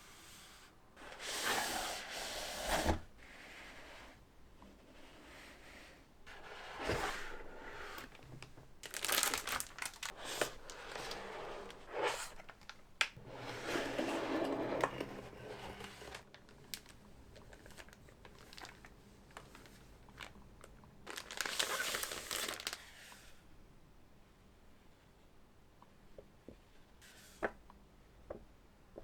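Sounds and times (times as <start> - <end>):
packaging crinkling and rustling: 6.8 - 13.2, 13.9 - 22.9.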